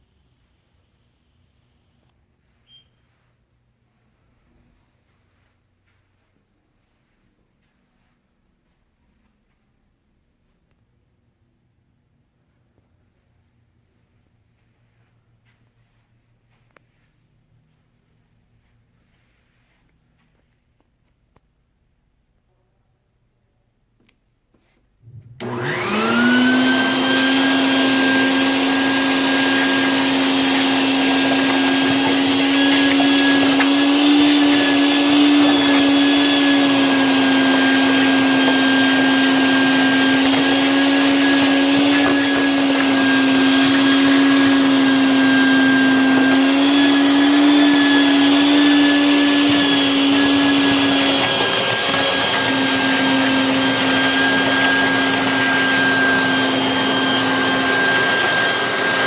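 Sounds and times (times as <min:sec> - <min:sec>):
electric motor whining: 0:25.4 - 0:59.0.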